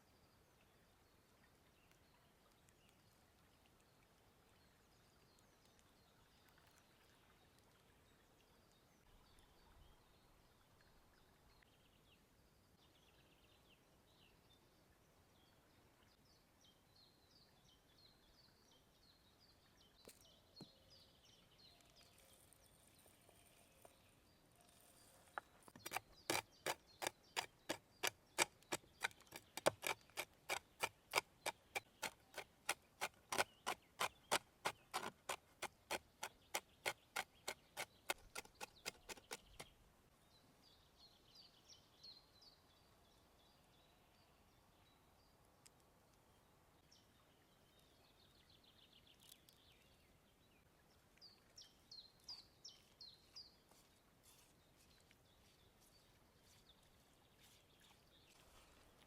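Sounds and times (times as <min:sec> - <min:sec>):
small birds chirping: 0:19.8 - 0:43.6, 0:46.8 - 0:58.9.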